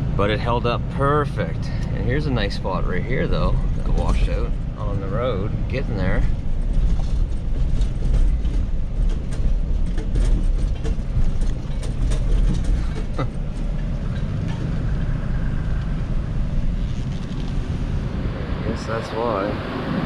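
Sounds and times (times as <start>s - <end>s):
road noise: 0.0s - 20.0s
truck engine drone: 0.0s - 20.0s
knocks and rattles: 6.1s - 15.6s.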